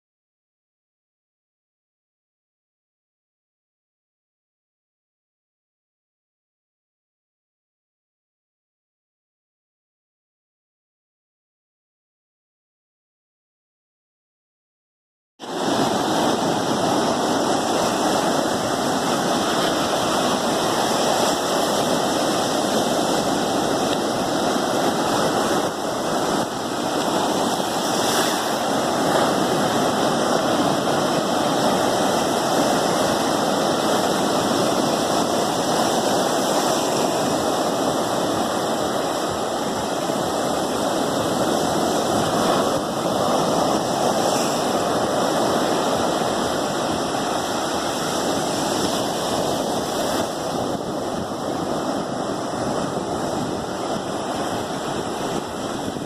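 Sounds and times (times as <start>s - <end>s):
rushing water: 15.4s - 56.0s.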